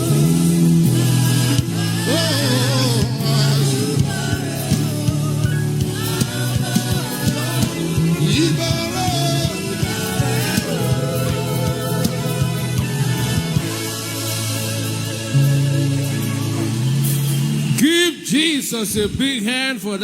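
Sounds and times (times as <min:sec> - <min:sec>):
voices singing long notes: 0:00.0 - 0:18.2
band playing sustained chords: 0:00.0 - 0:18.3.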